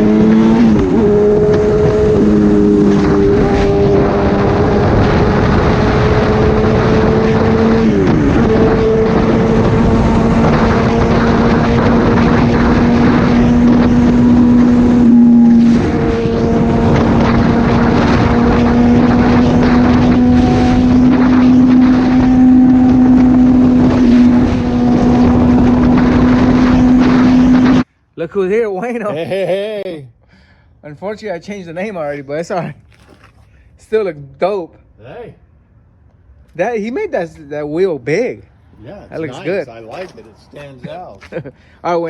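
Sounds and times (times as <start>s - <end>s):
wind noise: 0.0s - 27.9s.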